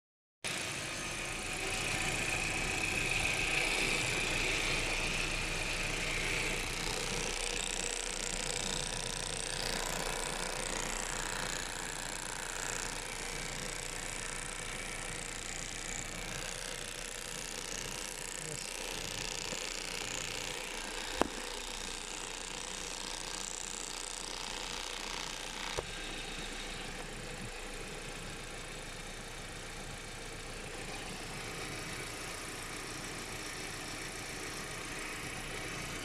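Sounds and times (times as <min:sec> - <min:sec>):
car engine running: 0:00.5 - 0:36.0.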